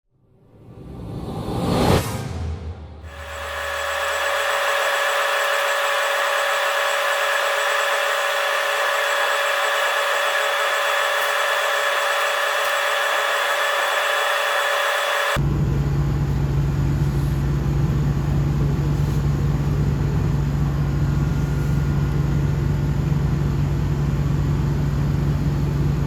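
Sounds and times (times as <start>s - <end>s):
small electric power tool whirring: 3.1s - 15.4s.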